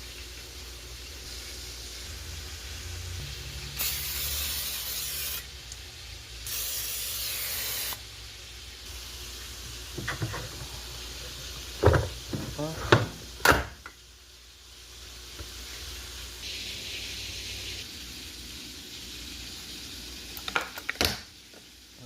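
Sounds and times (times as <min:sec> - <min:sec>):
aerosol spray hissing: 0:03.7 - 0:05.5, 0:06.4 - 0:08.0.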